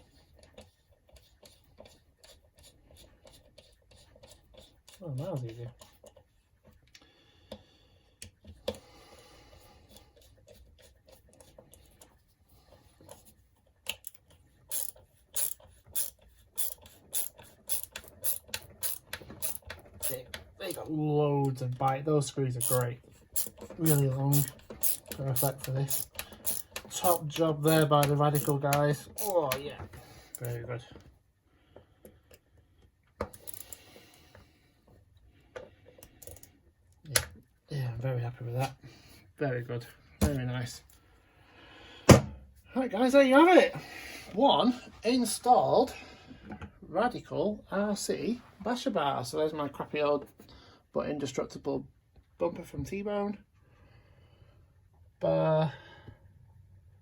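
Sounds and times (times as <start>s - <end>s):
screwdriver clicking: 13.9s - 20.4s, 22.6s - 29.6s, 33.2s - 33.8s
quiet scraping and rubbing: 18.9s - 31.1s.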